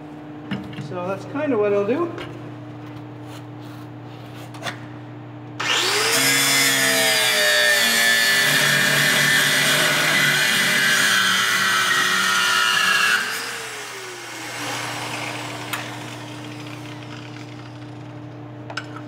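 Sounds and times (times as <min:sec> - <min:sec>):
angle grinder cutting metal: 0:05.6 - 0:18.0.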